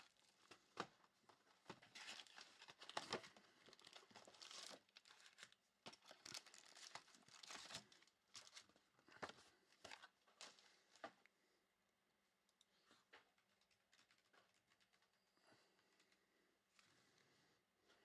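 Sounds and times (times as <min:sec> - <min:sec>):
cards and wrappers crinkling: 0:00.0 - 0:11.1, 0:13.4 - 0:15.2.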